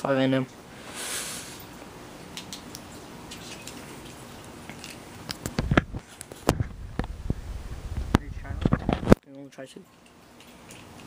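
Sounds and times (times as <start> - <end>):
faint hiss: 0.7 - 1.7.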